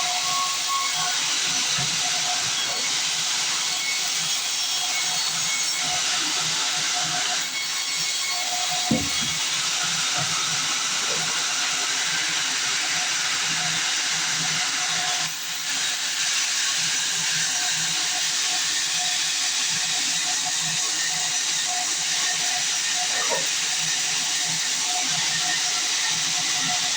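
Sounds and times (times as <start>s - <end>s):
band saw cutting log: 6.8s - 13.4s, 21.3s - 26.9s.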